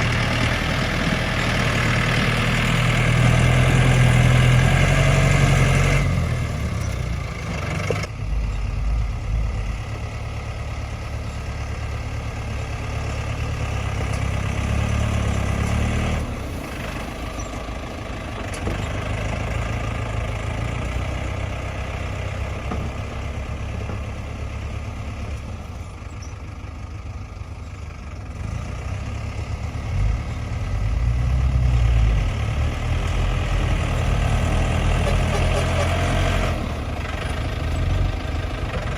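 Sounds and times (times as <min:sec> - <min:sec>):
tractor engine droning: 0:00.0 - 0:38.9.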